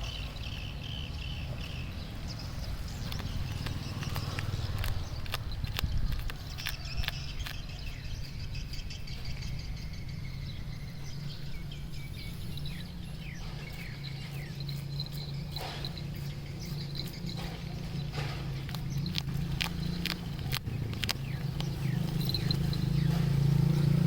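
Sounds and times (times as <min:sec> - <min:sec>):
scattered clicks: 0:02.4 - 0:08.1, 0:13.6 - 0:23.8.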